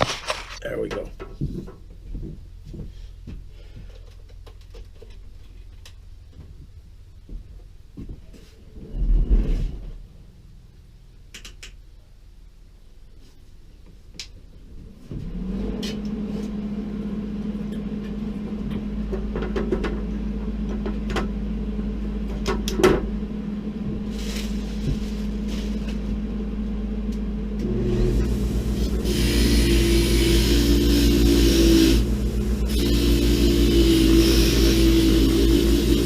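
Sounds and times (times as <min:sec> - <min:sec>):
welder humming: 0:27.6 - 0:36.0.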